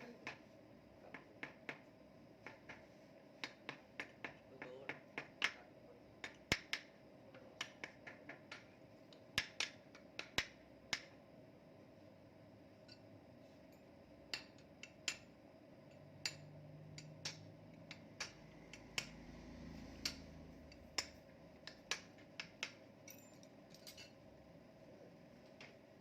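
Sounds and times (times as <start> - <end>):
metallic clicks of tools and engine parts: 13.7 - 19.2, 19.9 - 24.2.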